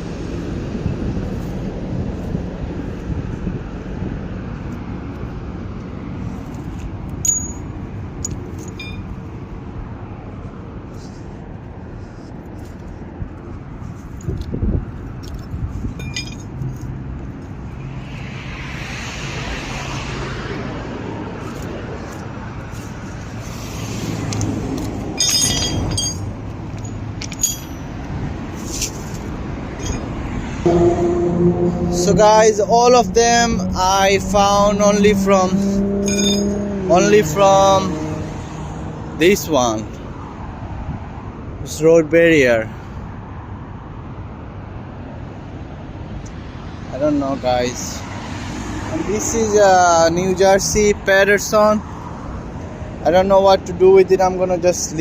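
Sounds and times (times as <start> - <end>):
road traffic rumble: 0.0 - 55.0
metal bolts clinking: 7.2 - 9.1, 16.0 - 16.6, 25.2 - 28.0, 29.8 - 30.1, 36.0 - 36.6.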